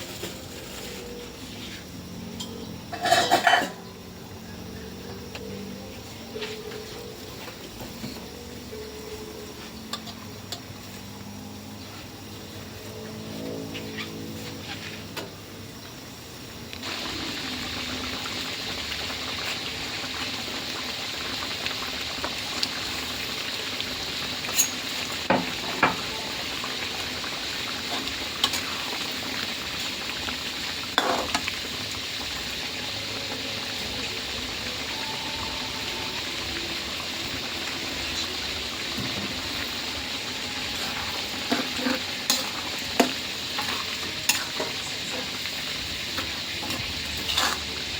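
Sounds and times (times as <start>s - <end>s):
curry bubbling in a pot: 16.8s - 35.0s, 36.5s - 47.9s.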